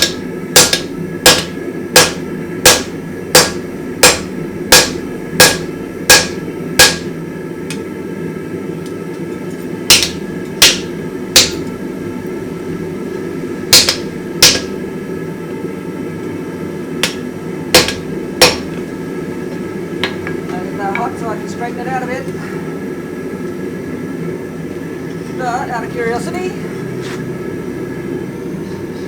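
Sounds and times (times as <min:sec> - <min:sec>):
hammer striking steel on anvil: 0:00.0 - 0:07.1, 0:09.9 - 0:11.7, 0:13.7 - 0:14.8, 0:17.0 - 0:18.7
steady hum: 0:00.0 - 0:29.0.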